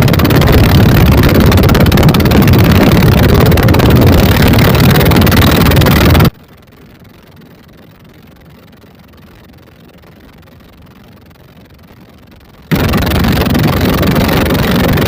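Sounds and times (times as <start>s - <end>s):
boat engines running: 0.0s - 6.3s, 12.7s - 15.0s
wind on microphone: 0.0s - 6.3s, 12.7s - 15.0s.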